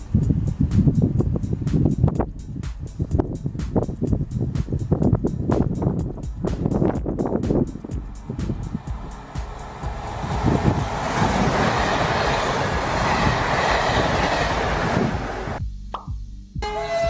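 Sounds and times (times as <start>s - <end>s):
train wheels rushing on rails: 5.8s - 15.6s
low knocks of train: 8.4s - 15.6s.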